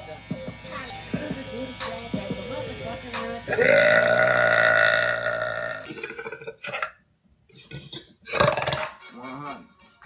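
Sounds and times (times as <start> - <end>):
woman burping: 3.5 - 7.0.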